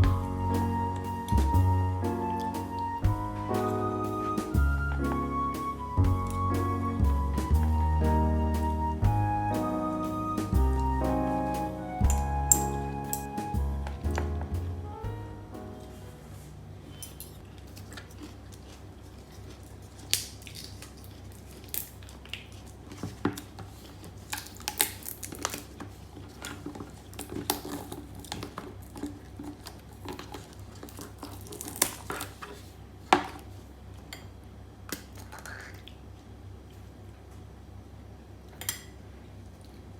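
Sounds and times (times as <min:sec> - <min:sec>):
low steady hum: 0:00.0 - 0:22.9.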